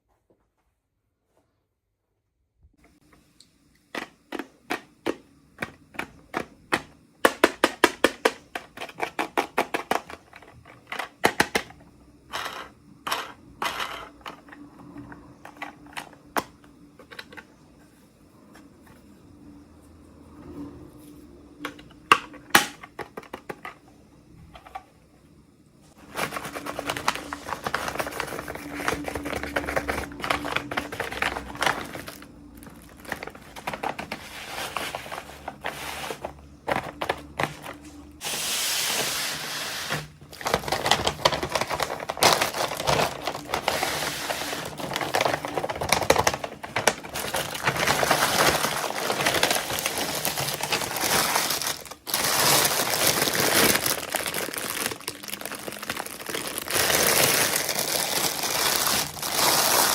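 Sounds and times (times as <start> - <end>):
plastic and paper crinkling: 25.9 - 59.9.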